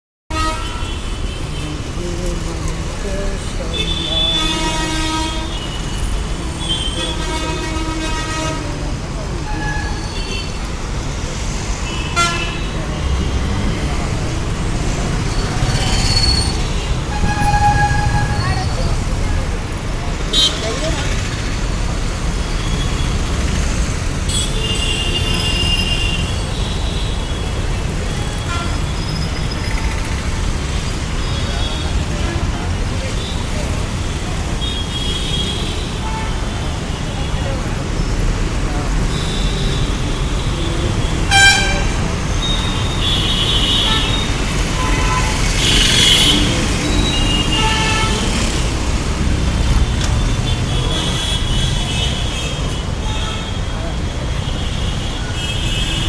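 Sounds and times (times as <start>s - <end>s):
car horns honking: 0.3s - 1.9s, 3.7s - 8.8s, 11.8s - 13.8s, 15.0s - 19.3s, 20.3s - 21.0s, 39.1s - 56.0s
vehicle engines running: 1.1s - 34.6s, 37.4s - 53.1s
metro train rumbling: 6.2s - 20.3s
metallic squeal of wheels: 15.2s - 19.1s, 28.6s - 30.2s, 42.2s - 47.8s.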